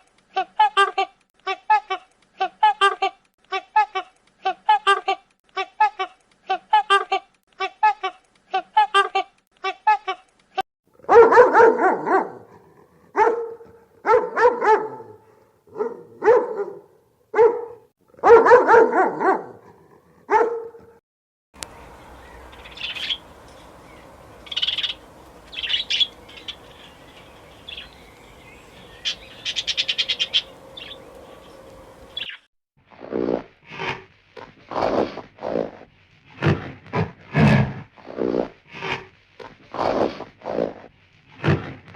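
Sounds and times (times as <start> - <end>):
dog barking: 11.0 - 20.9
faint steady hum: 21.6 - 32.3
high bird chirps: 21.6 - 32.5.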